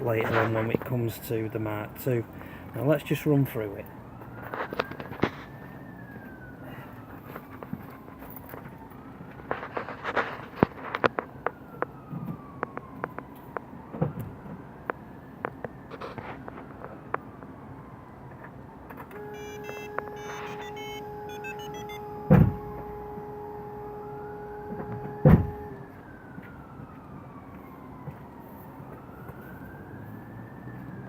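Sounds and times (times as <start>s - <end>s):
faint wailing siren: 0.0s - 31.0s
steady electronic tone: 19.2s - 23.9s
loud thumps: 22.3s - 22.7s.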